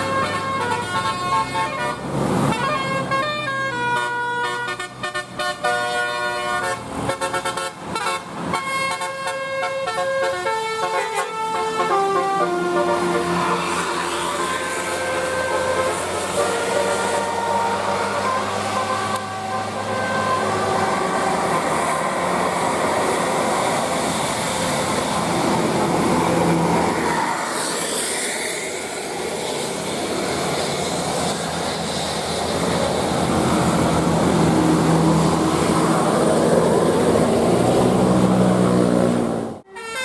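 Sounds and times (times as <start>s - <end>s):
buses passing by: 0.0s - 40.0s.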